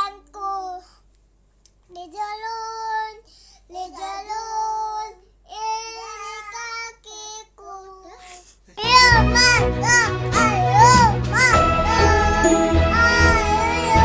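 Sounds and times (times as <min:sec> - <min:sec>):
child singing: 0:00.0 - 0:00.9, 0:01.9 - 0:08.2, 0:08.8 - 0:14.0
loud background music: 0:08.8 - 0:14.0.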